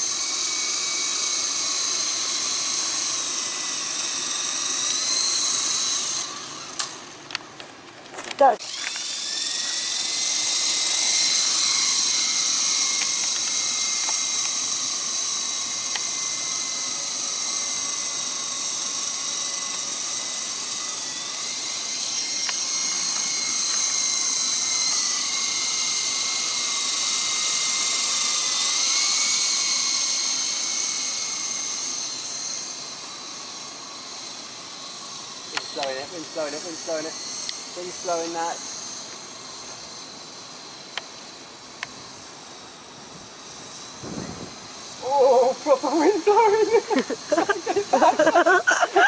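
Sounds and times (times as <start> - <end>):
toy helicopter motors whining: 0.0 - 49.0.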